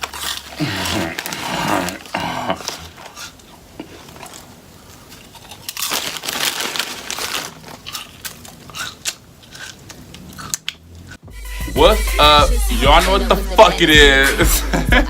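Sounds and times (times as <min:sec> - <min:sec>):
crunching: 0:00.0 - 0:11.2
food packaging crinkling: 0:00.0 - 0:11.2.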